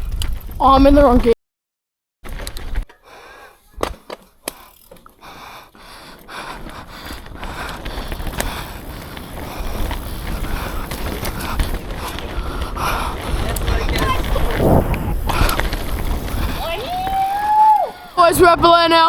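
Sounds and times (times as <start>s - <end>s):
bike clacks and rattles: 0.0s - 1.2s, 2.2s - 19.0s
wind noise on microphone: 0.0s - 1.4s, 6.7s - 18.8s
tyre rumble on dirt: 6.6s - 19.0s.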